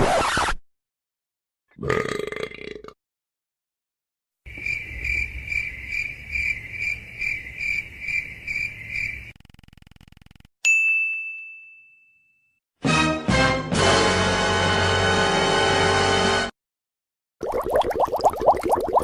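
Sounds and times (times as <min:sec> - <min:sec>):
cricket chirping: 0:04.5 - 0:09.4
bright ding: 0:10.7 - 0:12.4.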